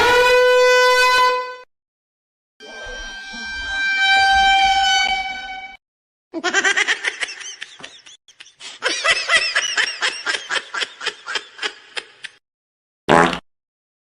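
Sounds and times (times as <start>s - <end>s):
cartoon snickering laugh: 6.4s - 12.4s.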